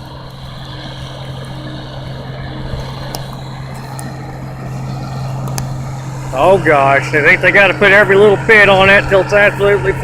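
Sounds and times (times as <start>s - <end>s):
machinery engine low drone: 0.0s - 10.0s.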